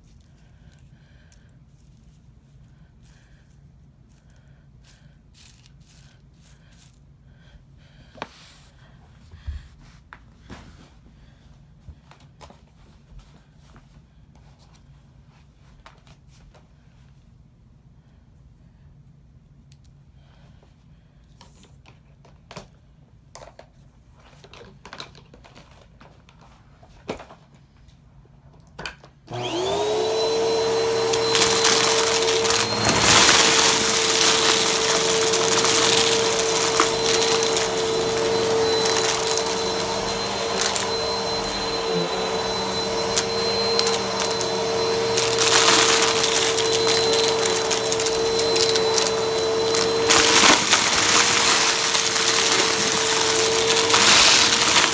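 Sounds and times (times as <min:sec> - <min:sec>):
vacuum cleaner running: 0:29.3 - 0:54.9.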